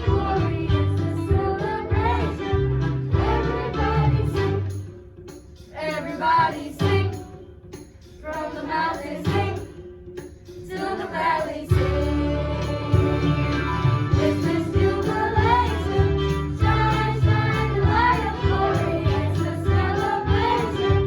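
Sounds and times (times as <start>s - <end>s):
bass line: 0.0s - 4.8s, 11.7s - 21.0s
group of voices singing: 0.0s - 4.8s, 5.8s - 7.4s, 8.2s - 10.0s, 10.6s - 21.0s
instrumental backing: 9.3s - 21.0s.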